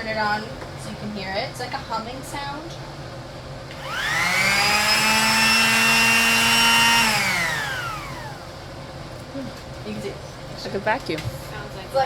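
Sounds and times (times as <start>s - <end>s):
electric sander motor whining: 3.8s - 8.5s.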